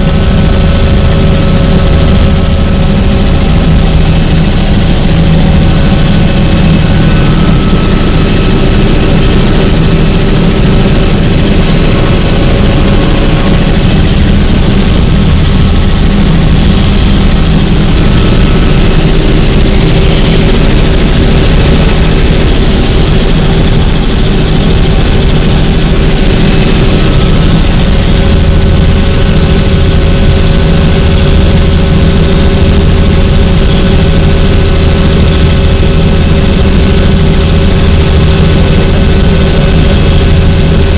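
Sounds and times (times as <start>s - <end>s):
helicopter rotor drone: 0.0s - 40.9s
helicopter turbine whine: 0.0s - 40.9s.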